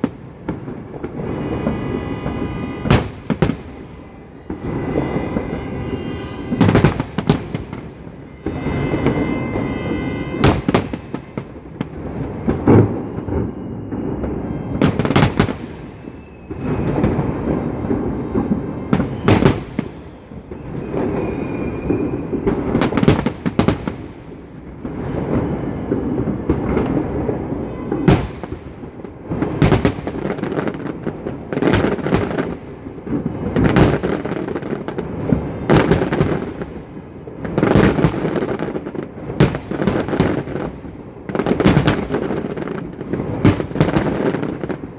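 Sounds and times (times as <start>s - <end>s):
loud fireworks bangs: 0.0s - 44.9s
short whistling tone: 15.9s - 17.4s, 18.1s - 22.8s.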